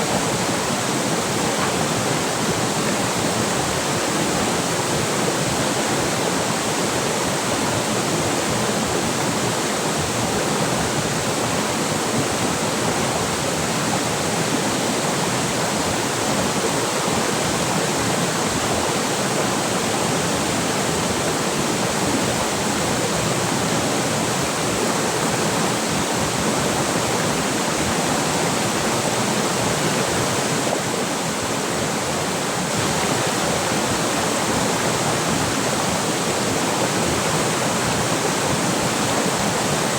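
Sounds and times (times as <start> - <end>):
flowing river water: 0.0 - 39.9.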